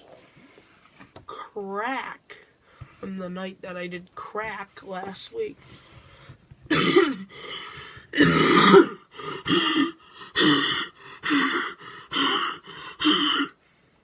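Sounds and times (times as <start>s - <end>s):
man coughing hard: 6.7s - 7.3s, 8.1s - 13.6s.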